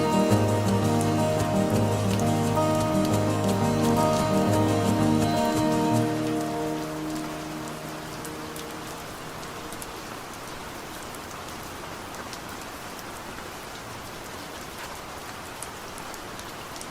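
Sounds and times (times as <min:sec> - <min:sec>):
song: 0:00.0 - 0:09.8
rain drop ticks: 0:00.0 - 0:13.9
steady rain: 0:00.0 - 0:16.9.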